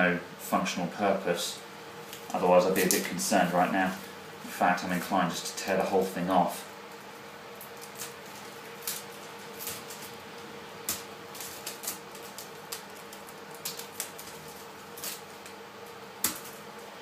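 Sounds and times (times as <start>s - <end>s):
faint steady hum: 0.0s - 17.0s
plastic sheet clicking and ticking: 10.9s - 15.6s.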